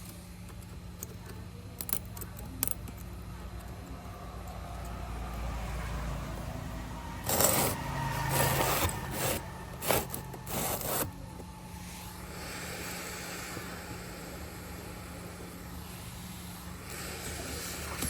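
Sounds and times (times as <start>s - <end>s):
steady low hum: 0.0s - 18.0s
rough scraping: 6.7s - 11.5s.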